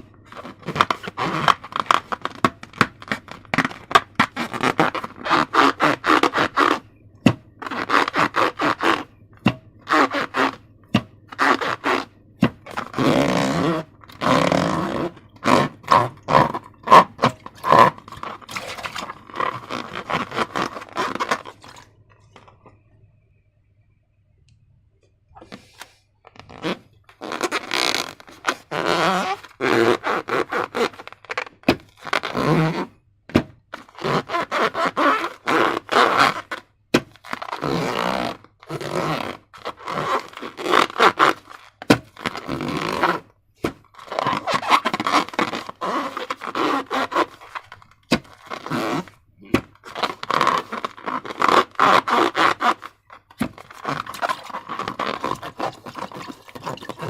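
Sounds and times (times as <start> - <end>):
slime squelching by hand: 0.0 - 22.6, 39.6 - 57.0.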